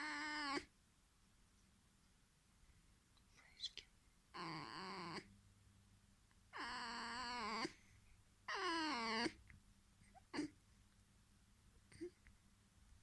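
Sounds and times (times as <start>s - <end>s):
fox whining squeaks: 6.6s - 7.8s, 8.5s - 9.4s.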